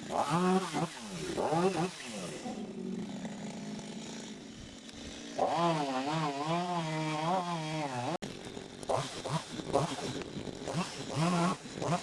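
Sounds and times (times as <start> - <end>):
chainsaw cutting: 0.0 - 12.0.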